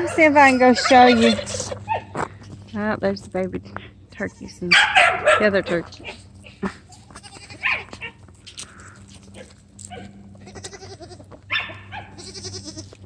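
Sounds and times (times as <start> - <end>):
young turkeys gobbling: 0.0 - 2.3
steady low hum: 0.0 - 13.0.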